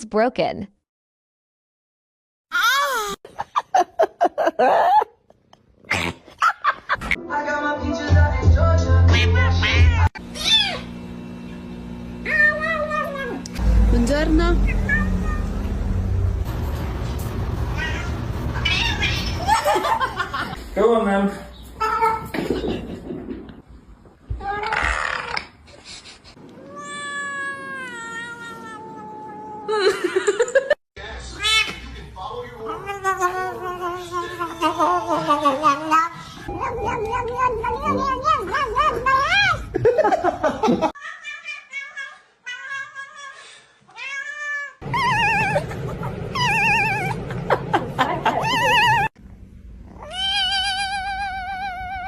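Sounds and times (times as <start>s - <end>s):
cat meowing: 17.8s - 19.4s, 26.6s - 29.7s, 36.5s - 39.6s, 46.3s - 47.2s, 50.0s - 52.0s.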